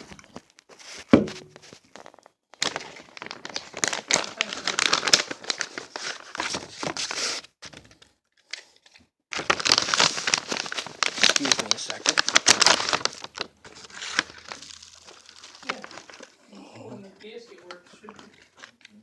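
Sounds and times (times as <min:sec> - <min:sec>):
pouch and paper crinkling: 0:00.0 - 0:07.8, 0:08.5 - 0:19.0
knock: 0:01.2 - 0:01.6.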